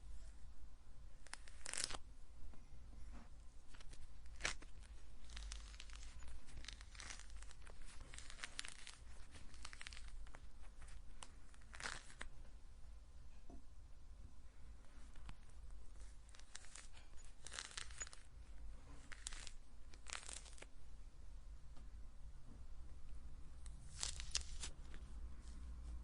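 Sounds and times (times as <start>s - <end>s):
faint low hum: 0.0s - 26.0s
orange rind tearing: 16.3s - 18.3s.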